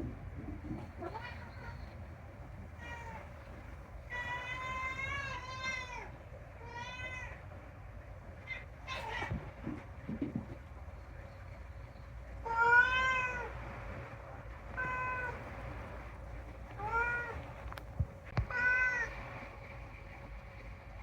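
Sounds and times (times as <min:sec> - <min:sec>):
cat meowing: 0:00.7 - 0:02.0, 0:02.8 - 0:03.4, 0:04.1 - 0:07.4, 0:12.4 - 0:13.5, 0:14.8 - 0:15.4, 0:16.8 - 0:17.4, 0:18.4 - 0:19.1.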